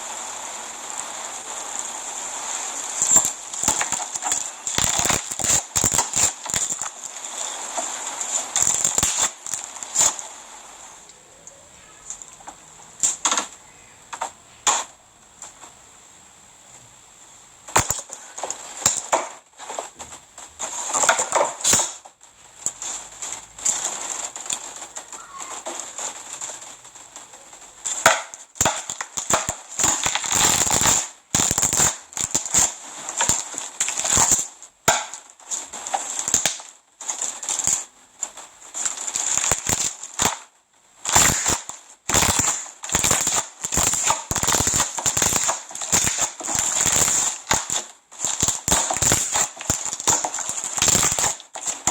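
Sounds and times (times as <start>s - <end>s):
slime crackling and popping: 2.5s - 15.7s, 17.7s - 51.9s.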